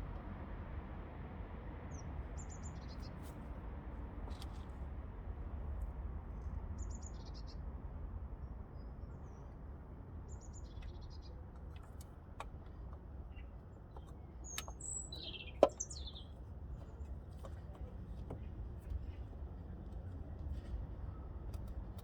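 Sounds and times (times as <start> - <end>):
small birds chirping: 10.3 - 17.8.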